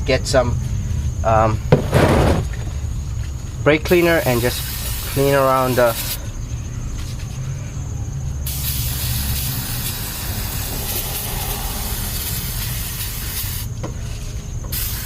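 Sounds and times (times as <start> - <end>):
aerosol can spraying: 4.2 - 6.2, 8.5 - 13.7, 14.7 - 15.0.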